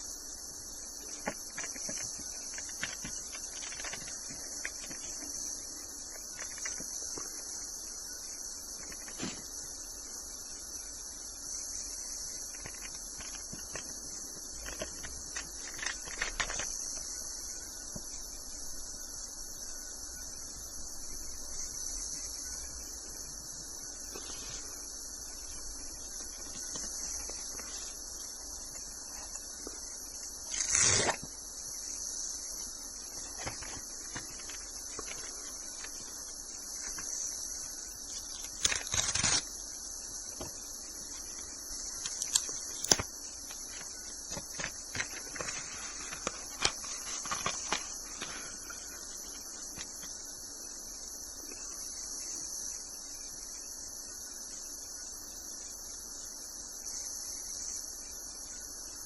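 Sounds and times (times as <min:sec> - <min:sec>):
insects chirring: 0:00.0 - 0:59.0.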